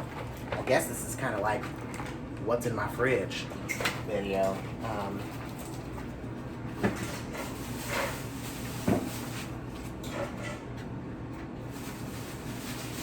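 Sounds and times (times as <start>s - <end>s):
plastic packaging rustling: 6.9s - 10.0s, 11.6s - 13.0s.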